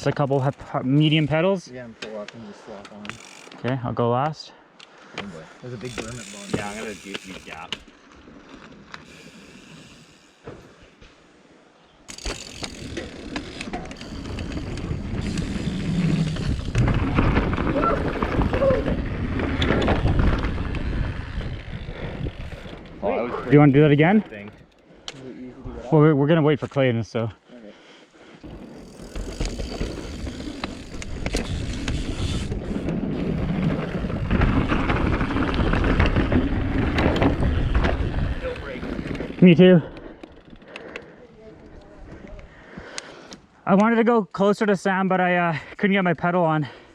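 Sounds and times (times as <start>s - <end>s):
bike rattles and clicks: 0.0s - 3.9s, 4.8s - 10.8s, 12.0s - 25.2s, 28.3s - 41.2s
bike tyre noise on dirt: 2.6s - 3.6s, 5.3s - 24.5s, 28.1s - 42.9s
wind on microphone: 14.0s - 23.0s.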